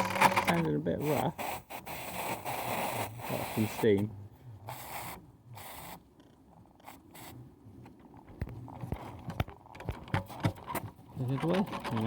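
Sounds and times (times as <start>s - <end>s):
model steam engine clicks and knocks: 9.2s - 12.0s.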